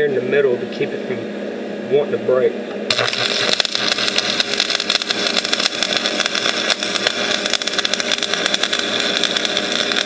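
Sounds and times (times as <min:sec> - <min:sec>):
welding arc crackling: 0:02.9 - 0:10.0.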